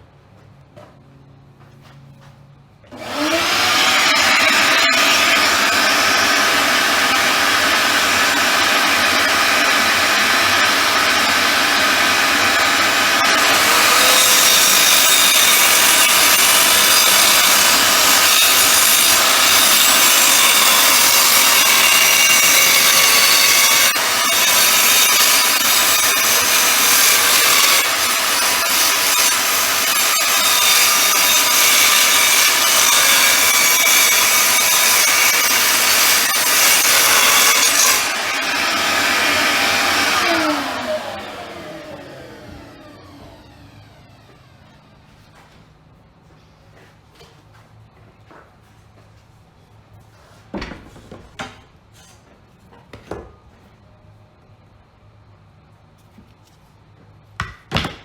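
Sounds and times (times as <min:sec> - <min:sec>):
circular saw cutting wood: 0:02.9 - 0:45.0.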